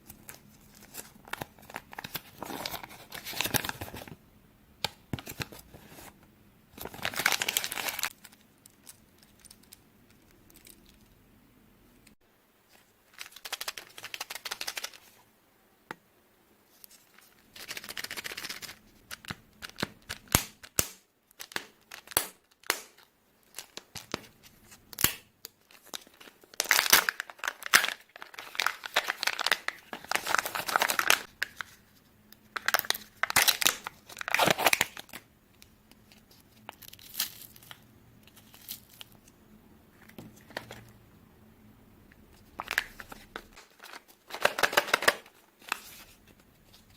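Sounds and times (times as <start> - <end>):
wrappers tearing and crinkling: 6.8 - 8.2, 25.7 - 31.6, 32.6 - 35.2.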